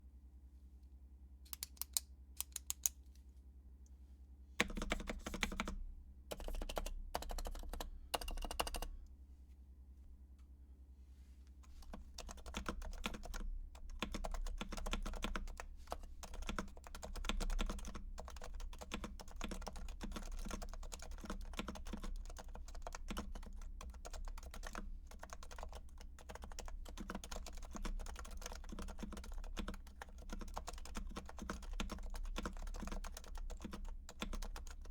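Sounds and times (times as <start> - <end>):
keyboard typing: 4.6 - 8.9, 11.8 - 34.9
sharp keyboard clicks: 4.6 - 8.9, 11.8 - 34.9.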